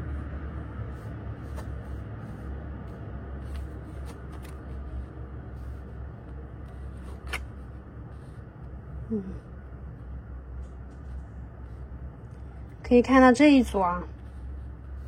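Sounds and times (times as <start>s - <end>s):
low hum: 0.0s - 15.0s
cards clicking and sliding: 1.4s - 2.0s, 2.8s - 5.0s, 5.7s - 7.8s.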